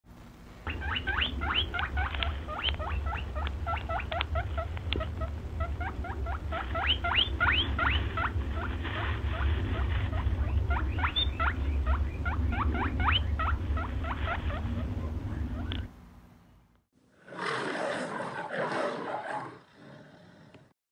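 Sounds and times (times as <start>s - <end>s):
steady low hum: 0.1s - 17.2s
animal squeaking: 0.7s - 15.9s.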